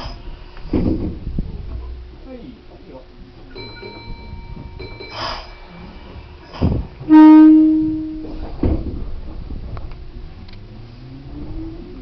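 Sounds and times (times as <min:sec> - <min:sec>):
train horn blast: 0:07.0 - 0:08.6.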